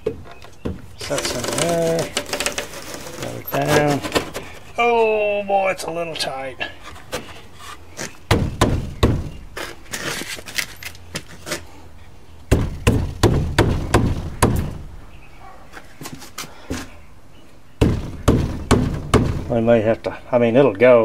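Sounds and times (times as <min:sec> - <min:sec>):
wooden cabinet part knocking: 0:08.3 - 0:09.4, 0:17.8 - 0:19.5.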